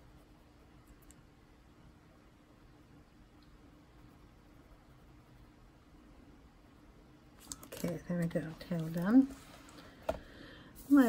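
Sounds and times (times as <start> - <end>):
faint hiss: 9.3 - 11.0.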